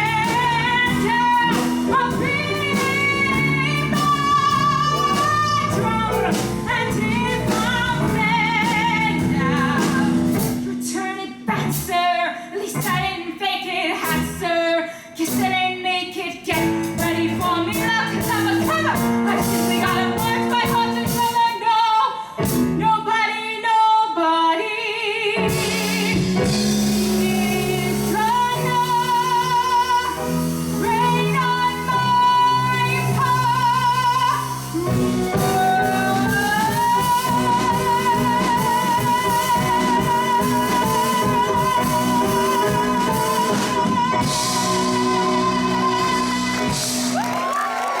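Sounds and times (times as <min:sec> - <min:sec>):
instrumental accompaniment: 0:00.0 - 0:12.1, 0:25.4 - 0:47.9.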